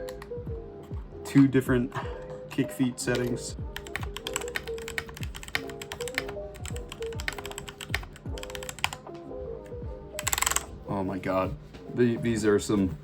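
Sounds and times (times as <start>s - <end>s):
background music: 0.0s - 13.0s
mechanical keyboard key clicks: 10.2s - 10.7s.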